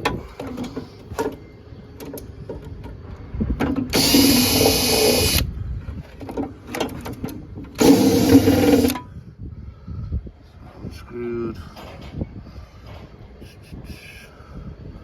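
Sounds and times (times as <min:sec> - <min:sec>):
power drill running: 0:03.9 - 0:05.5, 0:07.8 - 0:09.0.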